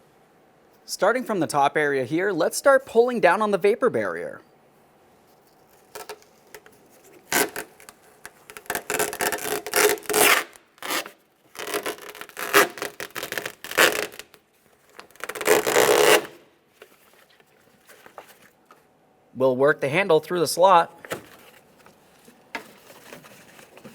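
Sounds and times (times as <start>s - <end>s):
plastic sheet peeling rustle: 5.3s - 18.6s, 21.0s - 23.9s.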